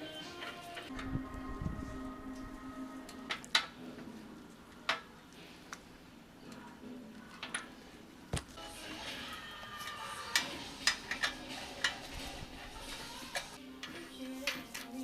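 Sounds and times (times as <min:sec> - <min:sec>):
tools clicking and knocking: 0:10.3 - 0:12.0.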